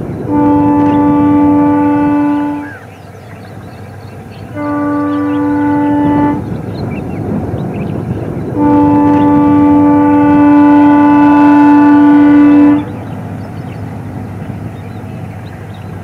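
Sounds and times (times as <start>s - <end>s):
locomotive horn blast: 0.0s - 2.9s, 4.4s - 6.6s, 8.4s - 13.2s
low rumble of train: 0.0s - 16.0s.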